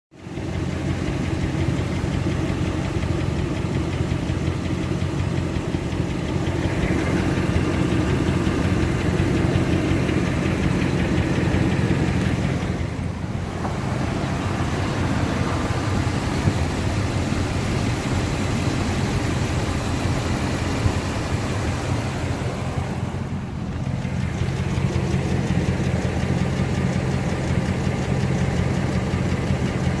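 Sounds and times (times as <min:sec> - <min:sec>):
truck engine idling: 0:00.2 - 0:30.0.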